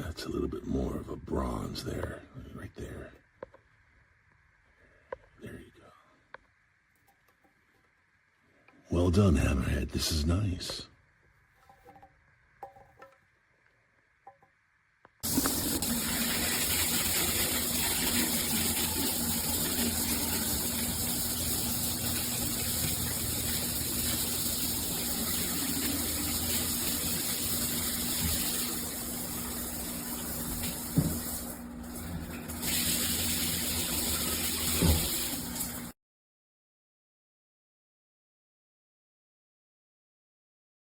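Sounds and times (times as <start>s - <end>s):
shower head spraying water: 15.2s - 35.9s.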